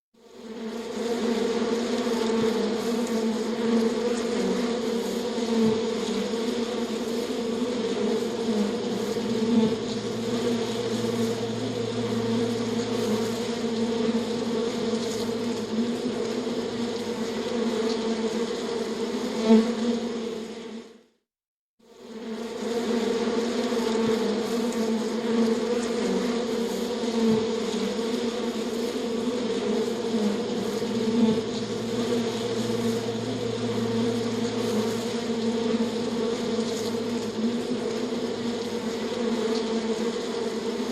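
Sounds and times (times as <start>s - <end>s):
flying insect buzzing: 0.2s - 21.0s, 21.9s - 40.9s
lower-pitched insect buzz: 0.2s - 21.0s, 21.9s - 40.9s.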